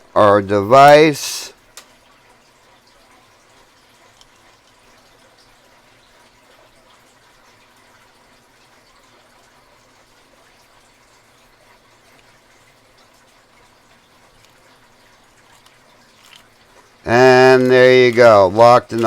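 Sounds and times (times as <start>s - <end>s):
steady hiss: 0.0s - 1.8s.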